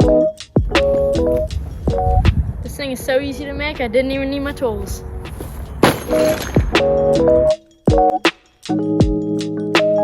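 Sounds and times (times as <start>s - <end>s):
drum beat with deep kick: 0.0s - 2.4s, 7.9s - 8.2s, 9.0s - 9.9s
keyboard chords: 0.0s - 2.4s, 5.9s - 10.0s.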